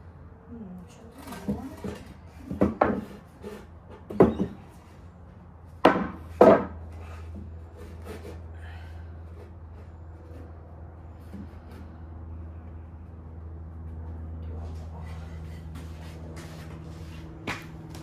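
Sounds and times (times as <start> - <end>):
timber knocking and clunking: 1.4 - 3.2, 5.8 - 6.8.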